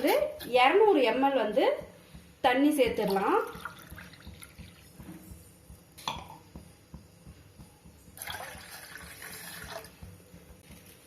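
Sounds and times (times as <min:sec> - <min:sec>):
water pouring into a pot: 0:08.2 - 0:10.0.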